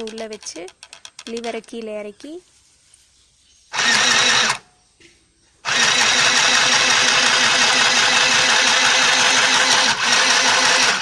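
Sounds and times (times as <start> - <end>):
sewing machine stitching: 3.8 - 4.6, 5.7 - 11.0.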